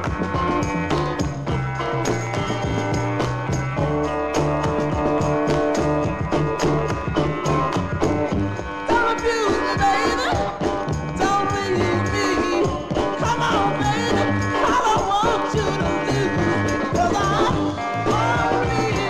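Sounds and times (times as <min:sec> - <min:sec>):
soul record with singing: 0:08.6 - 0:19.0.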